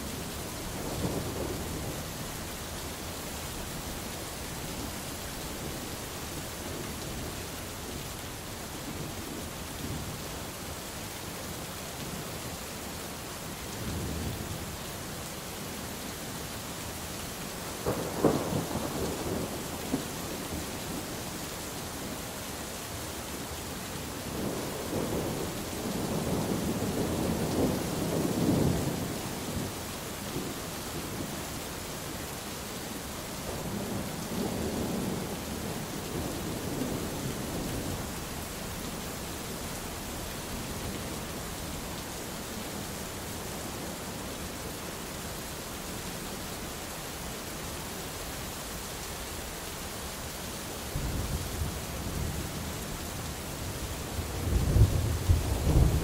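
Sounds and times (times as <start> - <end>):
steady rain: 0.0 - 56.0
thunder rumbling: 53.6 - 56.0.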